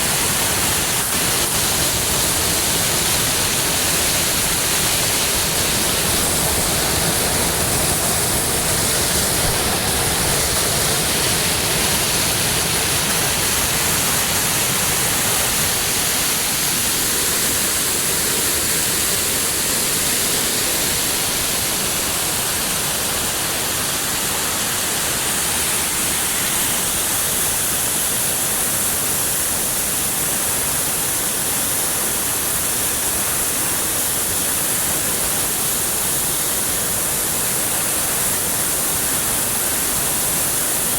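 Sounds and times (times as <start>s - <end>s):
water pouring over dam: 0.0s - 40.9s.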